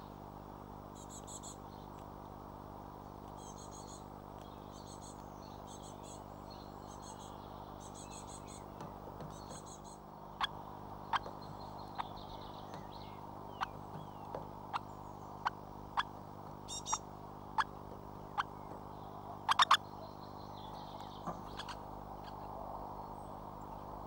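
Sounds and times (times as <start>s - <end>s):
low electrical hum: 0.0s - 24.0s
faint bird chirps: 0.9s - 2.0s, 3.4s - 24.0s.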